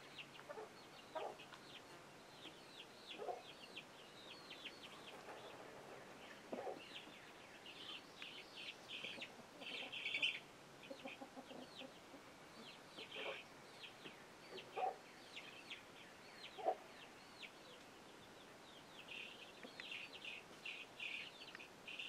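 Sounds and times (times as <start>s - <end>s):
chicks peeping: 0.0s - 17.8s
chicken clucking: 0.4s - 1.9s, 8.9s - 13.4s, 14.5s - 15.0s.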